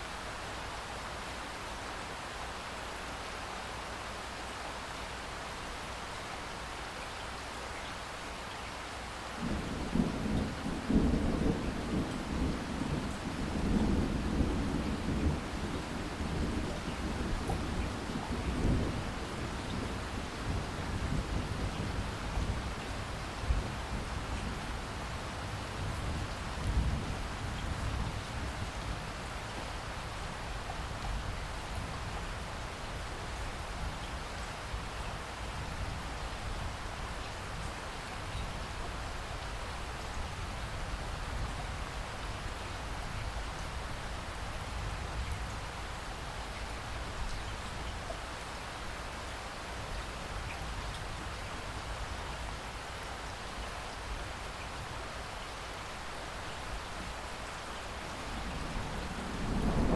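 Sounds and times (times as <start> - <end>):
steady rain falling: 0.0 - 59.9
distant thunder rumble: 9.4 - 22.8, 57.8 - 59.9.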